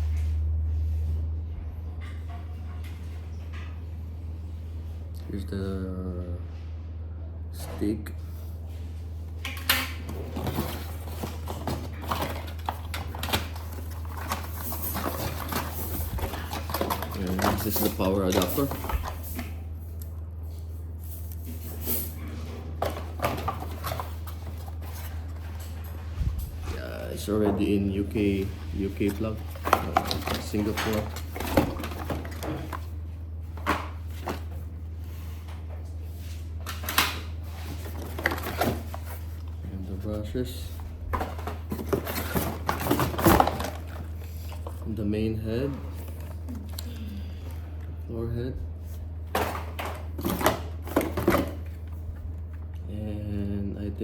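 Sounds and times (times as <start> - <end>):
steady low hum: 0.0 - 54.0
packaging rustling and crinkling: 10.0 - 19.6, 21.6 - 35.0, 36.6 - 47.1.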